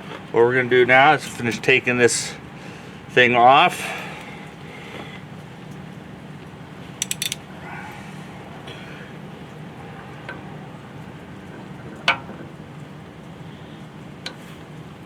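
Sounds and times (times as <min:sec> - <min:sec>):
metal tick and clink: 0:07.0 - 0:07.4.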